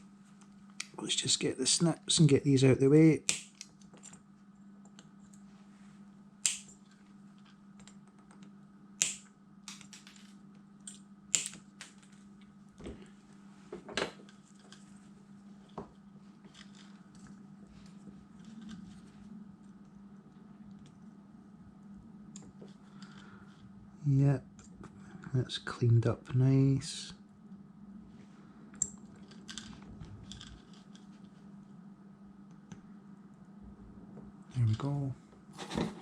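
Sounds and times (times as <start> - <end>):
faint steady hum: 0.0 - 36.0
side cutters snipping wire leads: 6.4 - 6.8.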